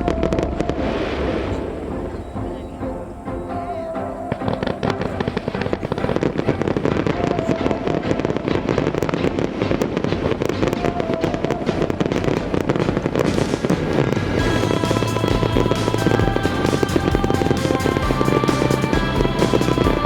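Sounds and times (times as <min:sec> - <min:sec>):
low rumble: 0:00.0 - 0:06.1, 0:11.0 - 0:20.0
music: 0:00.0 - 0:20.0
fireworks crackling: 0:08.2 - 0:20.0.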